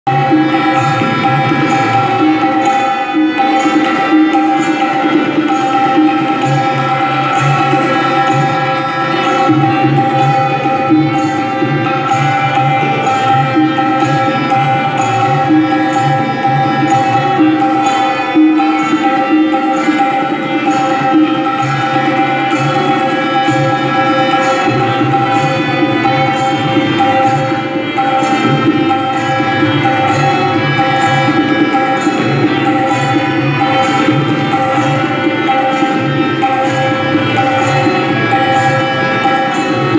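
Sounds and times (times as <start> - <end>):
tabla playing rhythmic strokes: 0.0 - 39.9
sustained melodic accompaniment: 0.1 - 39.9.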